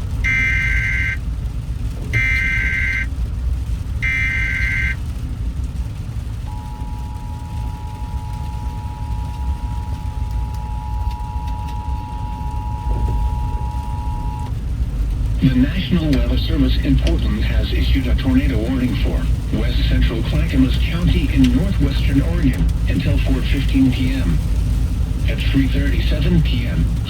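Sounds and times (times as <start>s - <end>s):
low steady rumble: 0.0s - 27.0s
screeching data bursts: 0.3s - 1.2s, 2.2s - 3.1s, 4.0s - 5.0s, 6.5s - 14.5s
two-tone alert signal: 0.3s - 1.2s, 2.2s - 3.1s, 4.0s - 5.0s, 6.5s - 14.5s.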